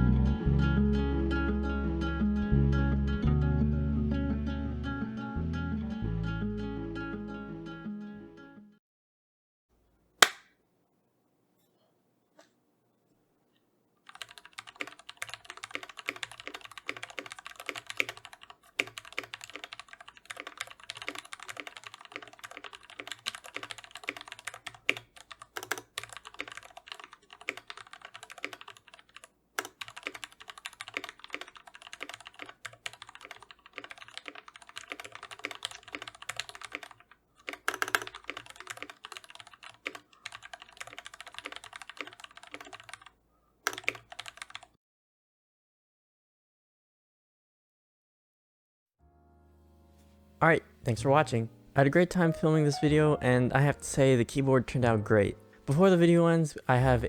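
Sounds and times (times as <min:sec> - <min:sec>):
mechanical keyboard key clacks: 0:14.1 - 0:43.1, 0:43.7 - 0:44.6.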